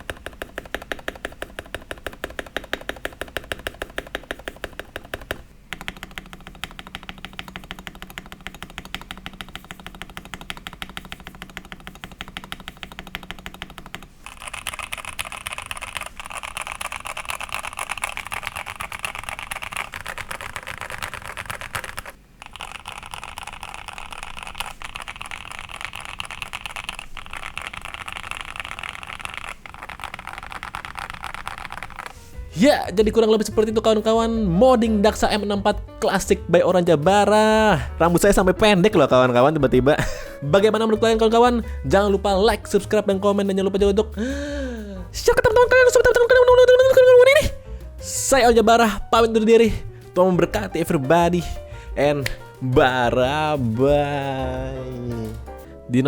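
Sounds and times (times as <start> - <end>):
mechanical keyboard key clacks: 0.0 - 32.2.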